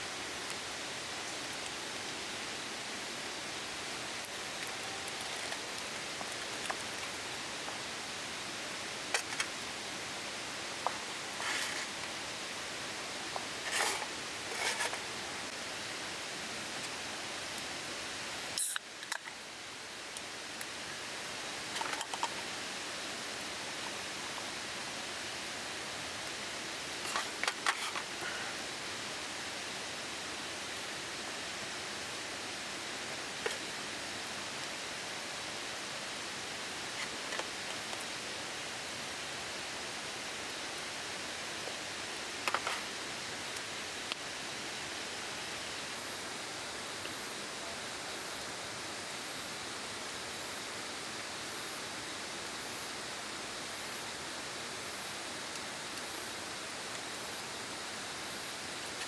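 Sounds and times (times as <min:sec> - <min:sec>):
small clicks and knocks: 0:42.4 - 0:42.8.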